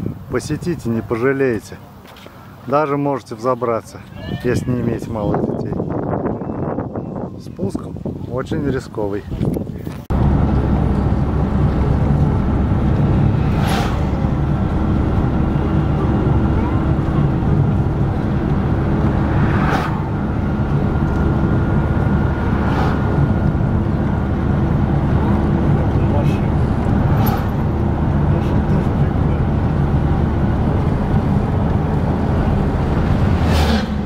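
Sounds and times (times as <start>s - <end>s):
car engine and tyre rumble: 0.0s - 4.2s, 7.7s - 34.0s
faint whine: 10.1s - 33.4s.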